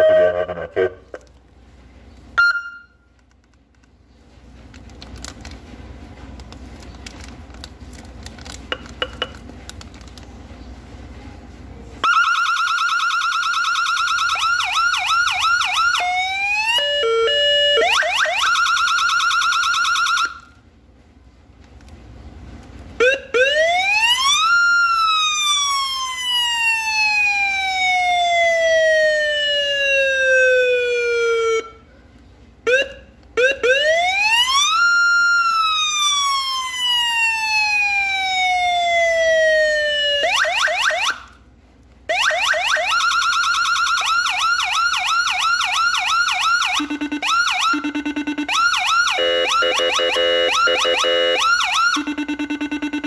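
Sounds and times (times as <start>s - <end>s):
electronic siren cycling tones: 0.0s - 1.0s, 45.7s - 53.0s.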